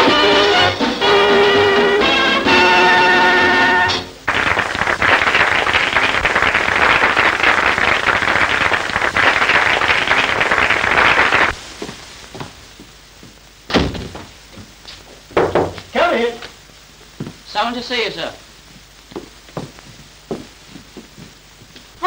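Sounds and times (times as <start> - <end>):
audience applauding: 4.3 - 11.6.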